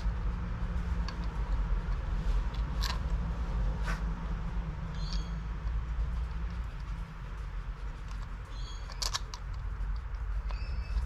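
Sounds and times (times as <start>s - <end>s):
steady low rumble: 0.0s - 11.0s
small metal parts clicking: 1.0s - 3.1s, 7.8s - 11.0s.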